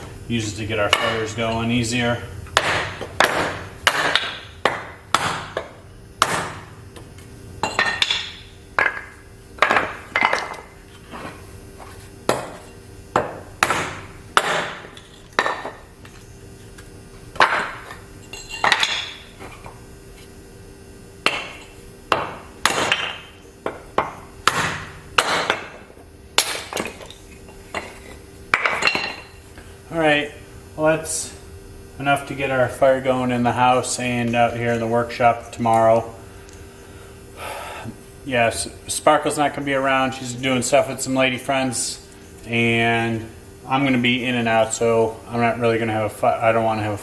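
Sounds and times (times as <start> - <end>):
hatchet striking wood: 2.5 - 6.7, 7.7 - 10.6, 12.3 - 15.8, 17.4 - 17.9, 18.6 - 19.3, 21.2 - 25.8, 26.4 - 27.1.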